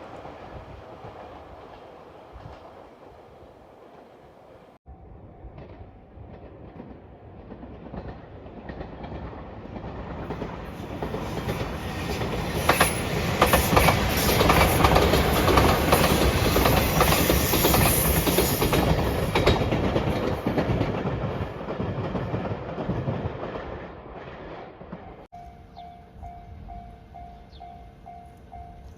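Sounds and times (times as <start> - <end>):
electric train passing: 0.0 - 28.9
wheels clacking over rail joints: 5.6 - 25.9.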